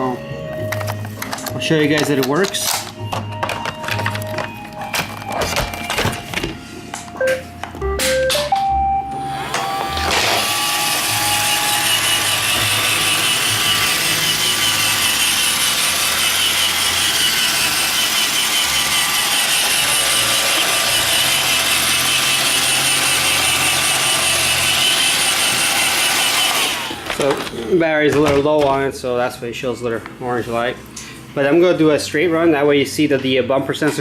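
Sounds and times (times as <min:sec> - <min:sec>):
robot vacuum whirring: 0:09.2 - 0:27.6.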